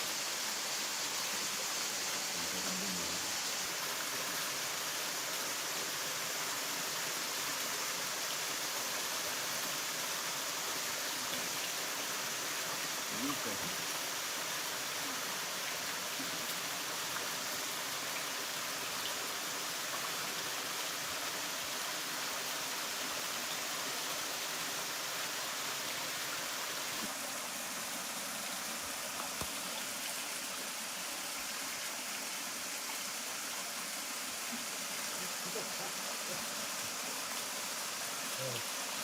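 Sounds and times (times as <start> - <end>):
waterfall rushing: 10.8 - 16.7.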